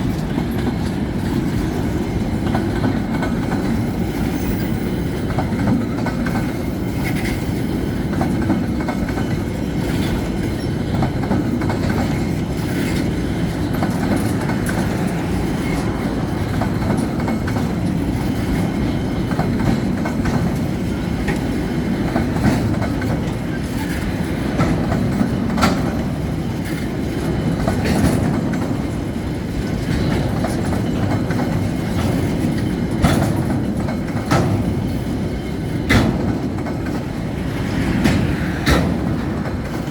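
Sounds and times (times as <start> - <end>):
freight train wagons rumbling: 0.0 - 39.9
wheels clicking on rails: 0.0 - 39.9.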